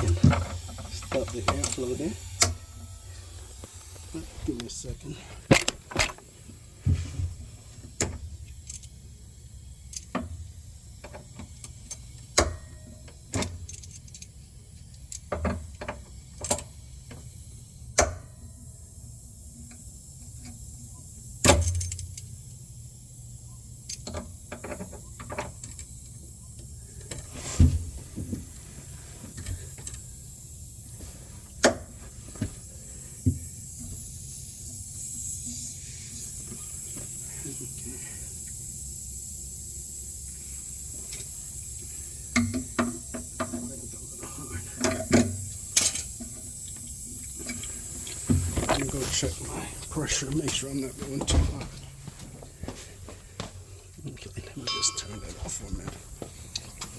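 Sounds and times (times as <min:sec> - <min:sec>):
metal tools clicking and clinking: 0:00.0 - 0:03.0, 0:08.5 - 0:09.0, 0:11.4 - 0:16.8, 0:21.6 - 0:22.3, 0:42.3 - 0:50.6, 0:54.6 - 0:56.8
faint hiss: 0:00.0 - 0:56.9
low steady hum: 0:25.0 - 0:56.9.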